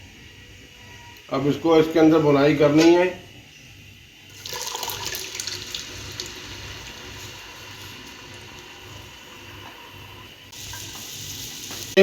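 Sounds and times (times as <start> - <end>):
paste sizzling in hot oil: 4.3 - 12.0.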